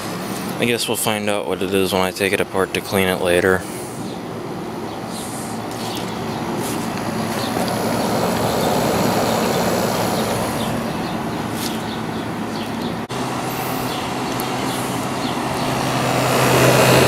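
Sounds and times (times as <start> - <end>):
air conditioner fan rushing air: 0.0 - 17.0
low compressor hum: 3.5 - 17.0.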